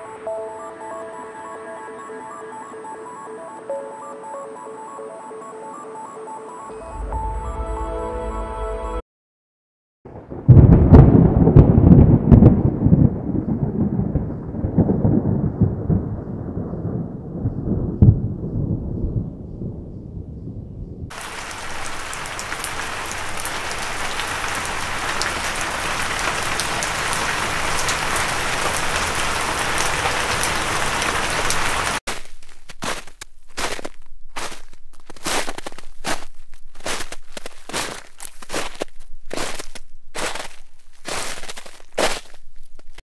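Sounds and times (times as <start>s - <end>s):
thunderclap rumbling: 10.1s - 32.0s
steady rain hiss: 21.1s - 32.0s.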